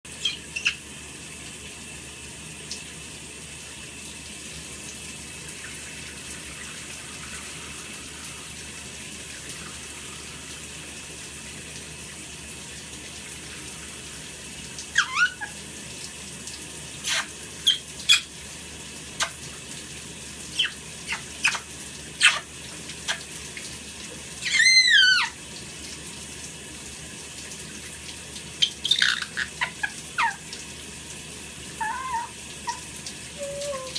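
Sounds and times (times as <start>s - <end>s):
parrot chirping and squawking: 0.1s - 0.8s, 14.9s - 15.6s, 17.0s - 18.3s, 20.5s - 22.5s, 24.4s - 25.4s, 28.6s - 30.6s, 31.8s - 33.9s
shower water running: 0.1s - 33.9s.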